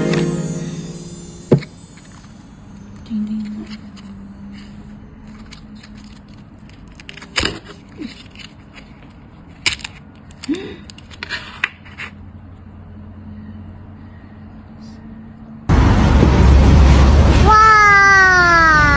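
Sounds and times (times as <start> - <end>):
packaging clicks and crinkles: 3.4 - 12.2.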